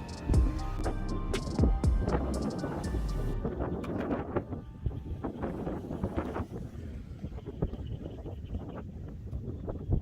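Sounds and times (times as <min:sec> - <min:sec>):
music with deep bass beat: 0:00.0 - 0:06.0.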